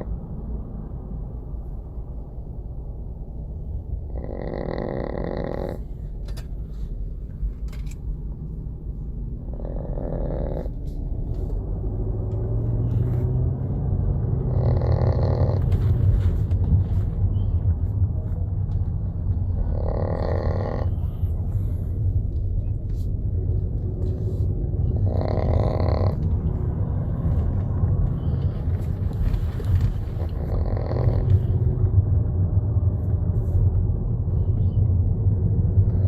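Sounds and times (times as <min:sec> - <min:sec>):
steady low rumble: 0:00.0 - 0:36.0
small dog snoring: 0:04.1 - 0:05.9, 0:09.5 - 0:11.0, 0:14.4 - 0:15.8, 0:19.5 - 0:21.7, 0:24.8 - 0:26.3, 0:30.2 - 0:31.6.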